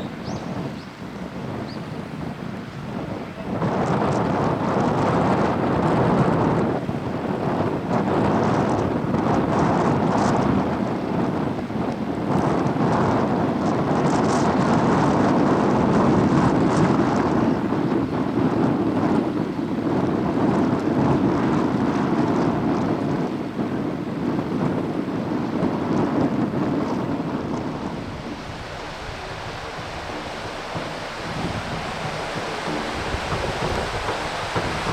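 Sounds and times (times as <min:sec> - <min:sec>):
wind buffeting microphone: 0:00.0 - 0:34.9
steady rushing noise: 0:26.1 - 0:34.9.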